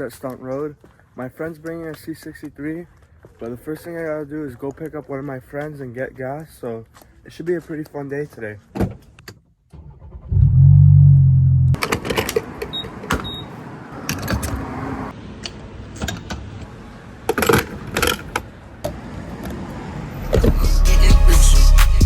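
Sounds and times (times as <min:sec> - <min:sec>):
car engine running: 0:10.1 - 0:11.8.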